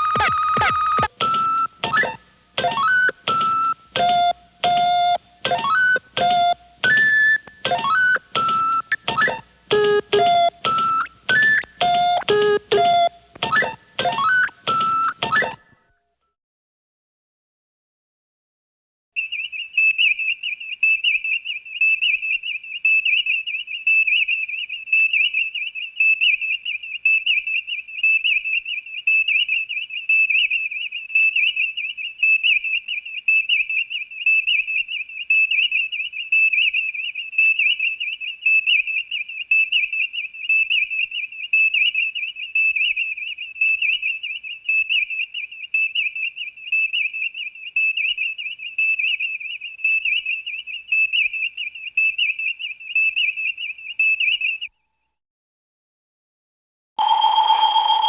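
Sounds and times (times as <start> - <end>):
warbling electronic whistle tone: 0.0 - 15.6, 57.0 - 58.0.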